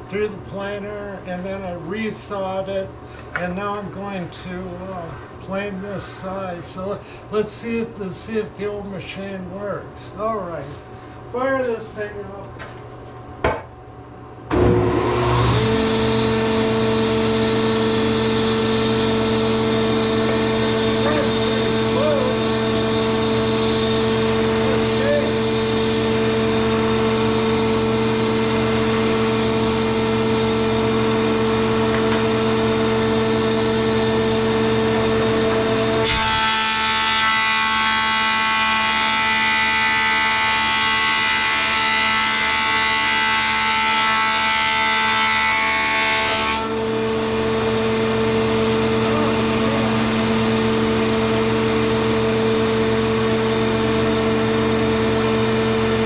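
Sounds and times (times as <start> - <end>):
planer whine cutting board: 14.5 - 56.0
wood planer running: 14.5 - 56.0.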